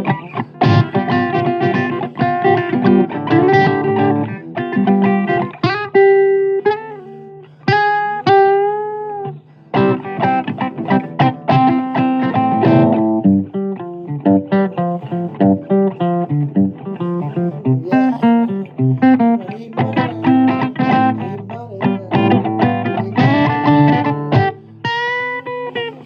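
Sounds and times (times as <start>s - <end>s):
blues guitar playing: 0.0s - 26.0s.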